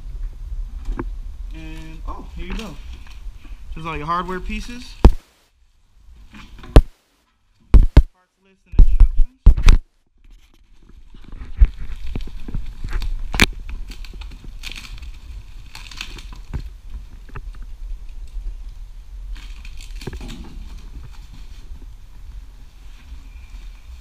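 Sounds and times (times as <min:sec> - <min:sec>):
low rumble: 0:00.0 - 0:05.1
plastic and cardboard crinkling: 0:09.6 - 0:24.0.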